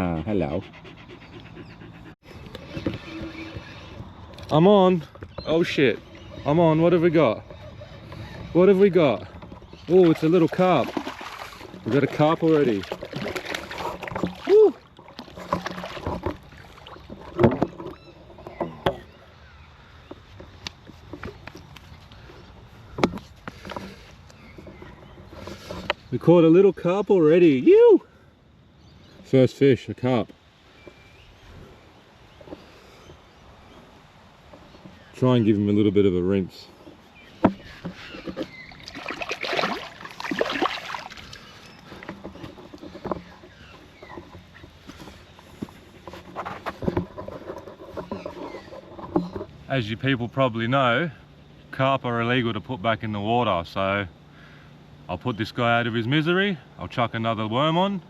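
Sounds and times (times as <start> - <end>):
water splashing and sloshing: 0.0 - 26.9, 30.0 - 50.1
fish splashing in water: 9.8 - 18.1, 37.5 - 44.7.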